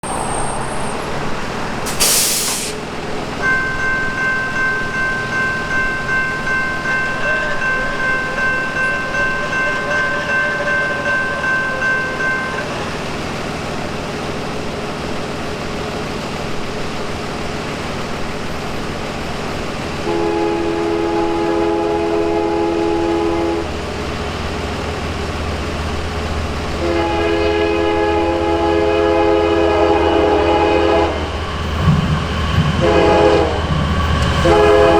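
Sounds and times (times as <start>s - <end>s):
freight train rumble: 0.0s - 34.9s
locomotive horn blast: 20.0s - 23.8s, 26.7s - 31.4s, 32.5s - 34.9s.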